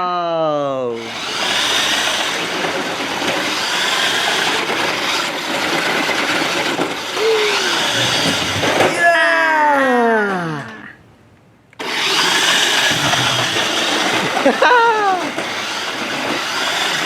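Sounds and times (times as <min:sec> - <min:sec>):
toy car motors whirring: 0:01.0 - 0:09.0, 0:11.8 - 0:17.0.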